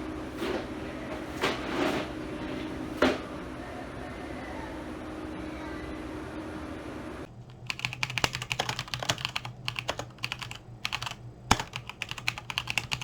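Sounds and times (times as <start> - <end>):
background hum: 3.4 - 13.0
computer keyboard typing: 7.3 - 13.0.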